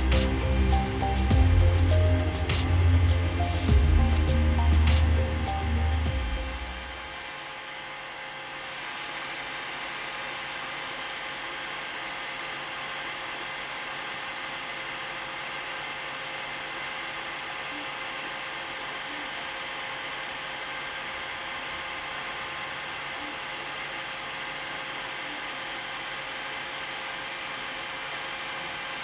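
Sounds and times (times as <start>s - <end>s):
faint constant tones: 0.0s - 11.4s
small machine whirring: 0.0s - 29.0s.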